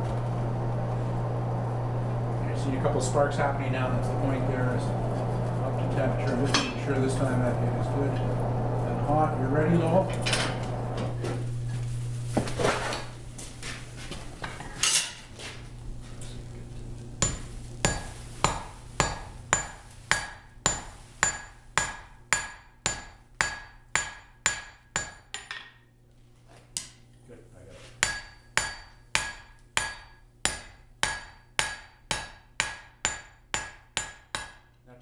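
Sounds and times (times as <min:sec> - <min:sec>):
hammer striking steel on anvil: 0:17.2 - 0:25.7, 0:28.0 - 0:34.7.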